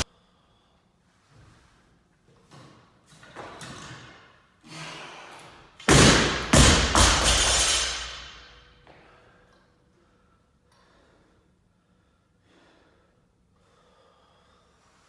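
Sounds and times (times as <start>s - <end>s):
barbell thudding on platform: 5.9s - 8.4s.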